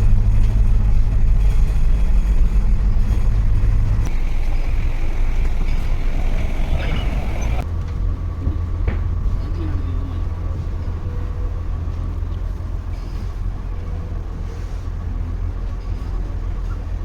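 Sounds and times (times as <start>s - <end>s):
boat engine low drone: 0.0s - 17.0s.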